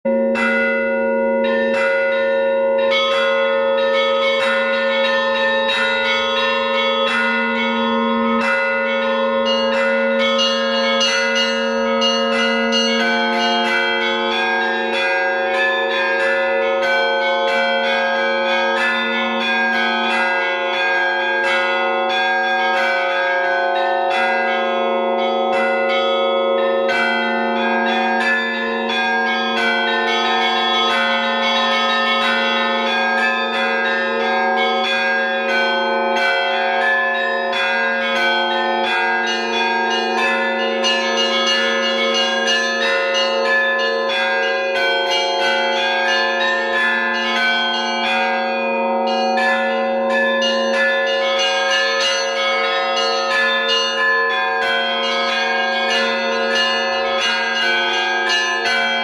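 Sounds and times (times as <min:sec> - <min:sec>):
large bells ringing: 0:00.1 - 0:59.0
small church bells struck quickly: 0:00.1 - 0:59.0.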